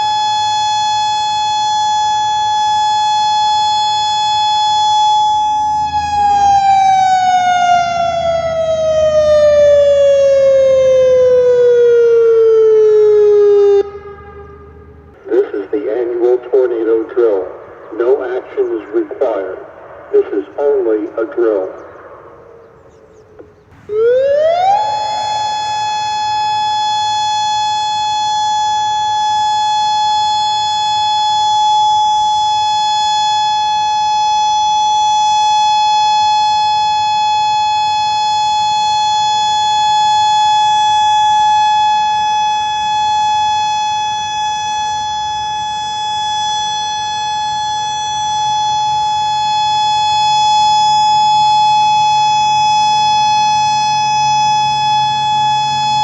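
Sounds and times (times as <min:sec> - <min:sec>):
tornado warning siren: 0:00.0 - 0:56.0.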